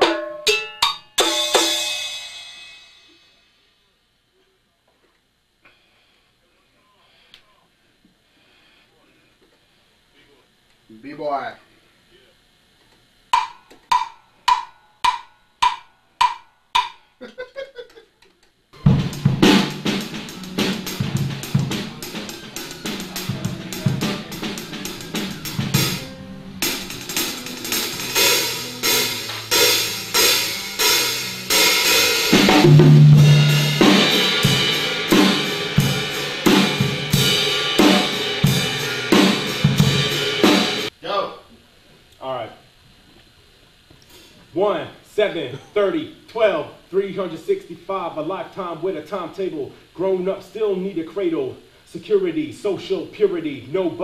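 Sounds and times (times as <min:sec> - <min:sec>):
drum kit playing hip-hop groove: 0:00.0 - 0:03.3, 0:13.3 - 0:17.0, 0:18.8 - 0:40.9
bass line: 0:18.8 - 0:40.9.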